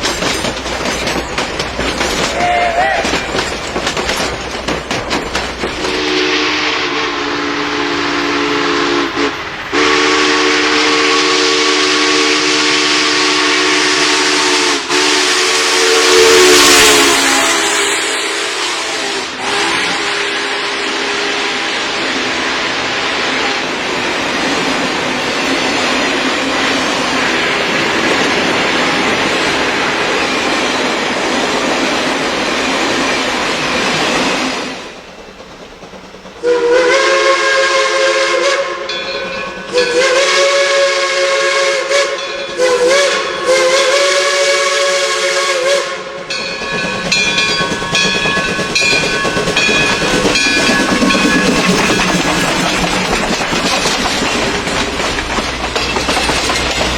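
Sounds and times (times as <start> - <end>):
steam hissing: 0.0 - 56.9
locomotive chime whistle blasts: 2.3 - 3.3, 5.8 - 23.6, 36.4 - 51.6.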